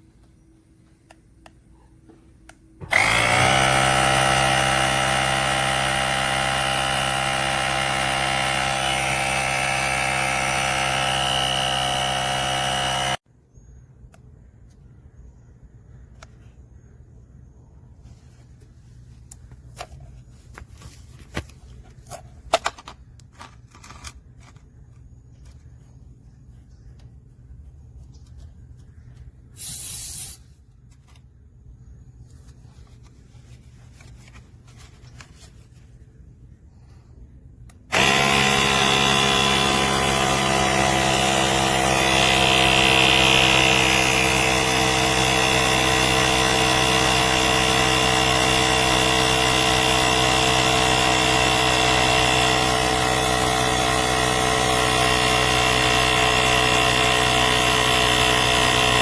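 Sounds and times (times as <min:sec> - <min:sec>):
tire inflator compressor running: 0:02.2 - 0:13.2, 0:29.5 - 0:30.4, 0:36.6 - 0:59.0
brief hiss: 0:29.6 - 0:30.6.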